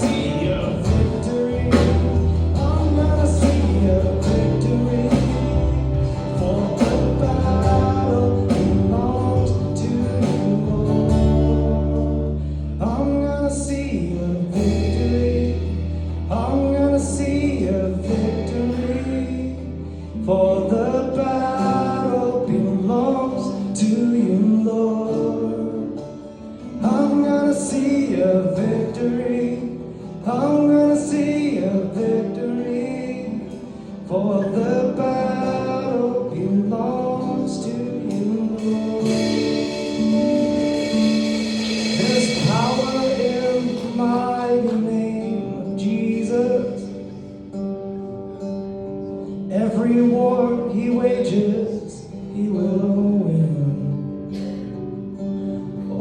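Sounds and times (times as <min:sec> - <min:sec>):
deep bass notes: 0:00.0 - 0:23.0, 0:37.6 - 0:45.6
person singing: 0:00.0 - 0:47.3
guitar: 0:00.0 - 0:56.0
worship band music: 0:00.0 - 0:56.0.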